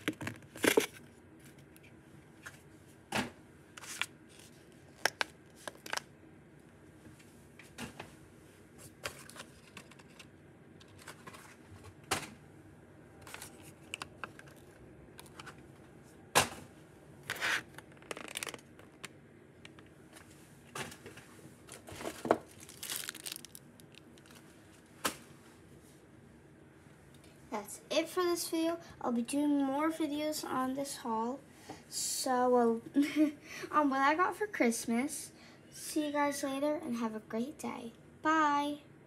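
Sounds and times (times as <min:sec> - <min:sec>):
crinkling rustles: 0:13.2 - 0:15.6, 0:17.3 - 0:24.8.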